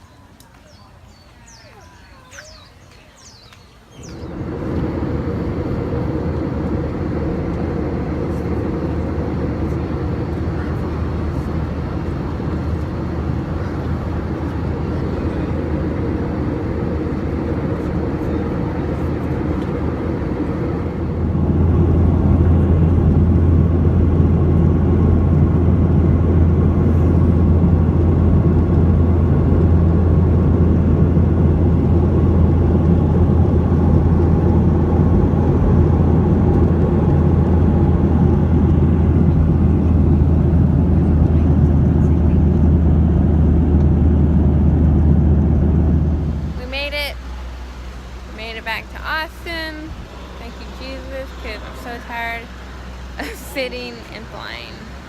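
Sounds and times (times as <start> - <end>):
low vehicle rumble: 4.0 - 55.0.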